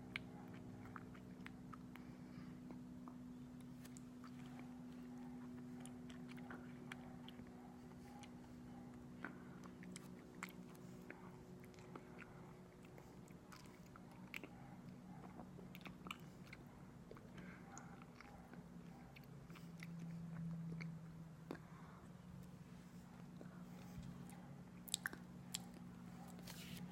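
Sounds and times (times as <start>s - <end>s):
steady low hum: 0.0s - 26.9s
wet chewing mouth clicks: 24.3s - 25.9s.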